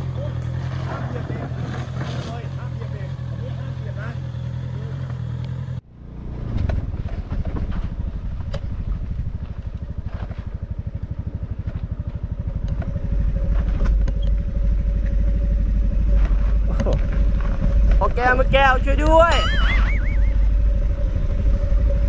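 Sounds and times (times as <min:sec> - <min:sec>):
motorcycle engine running: 0:00.0 - 0:22.0
heavier low rumble: 0:05.4 - 0:22.0.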